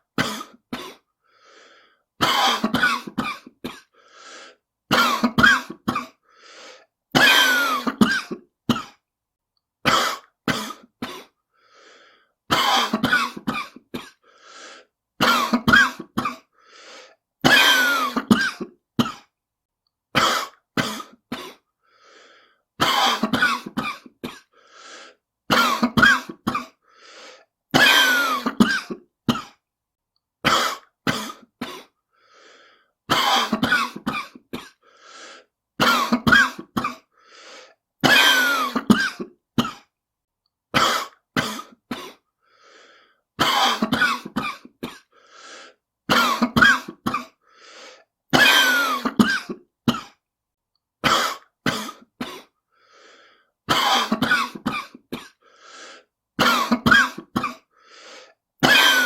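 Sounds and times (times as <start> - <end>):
person hacking cough: 0.1 - 1.0, 2.2 - 3.9, 4.9 - 6.2, 7.1 - 9.0, 9.8 - 11.4, 12.5 - 14.2, 15.2 - 16.5, 17.4 - 19.3, 20.2 - 21.6, 22.8 - 24.5, 25.5 - 26.8, 27.7 - 29.6, 30.4 - 32.0, 33.1 - 34.8, 35.8 - 37.1, 38.0 - 39.9, 40.7 - 42.2, 43.4 - 45.1, 46.1 - 47.4, 48.3 - 50.2, 51.0 - 52.5, 53.7 - 55.4, 56.4 - 57.7, 58.6 - 59.0.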